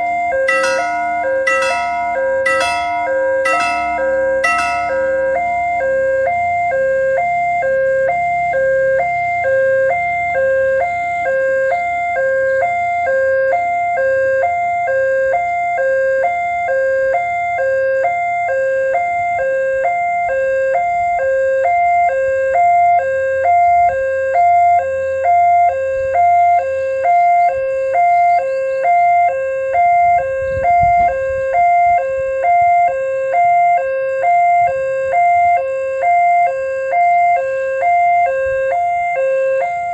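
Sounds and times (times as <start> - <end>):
level crossing alarm ding-dong: 0.5 - 5.8.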